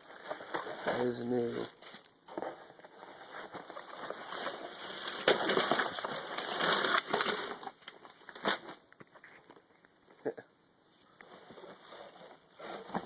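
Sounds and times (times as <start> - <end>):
plastic bag rustling: 0.0 - 8.8.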